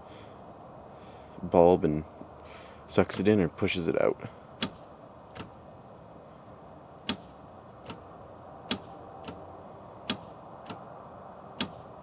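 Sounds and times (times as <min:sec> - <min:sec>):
headlight solenoid clicks: 0:08.7 - 0:09.4, 0:10.0 - 0:10.8, 0:11.6 - 0:11.9.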